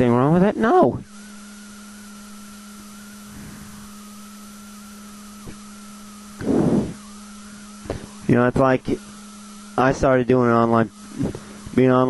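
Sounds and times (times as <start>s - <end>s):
high wavering whine: 0.0s - 12.0s
steady electrical hum: 0.0s - 12.0s
small click: 5.4s - 5.6s.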